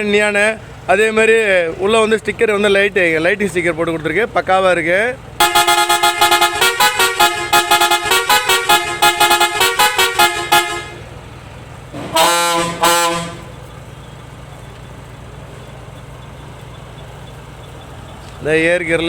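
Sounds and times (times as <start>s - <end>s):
engine idling: 0.0s - 19.0s
multi-tone horn notes: 5.4s - 11.1s, 12.0s - 13.6s
horn blasts: 5.4s - 11.3s, 12.0s - 13.7s.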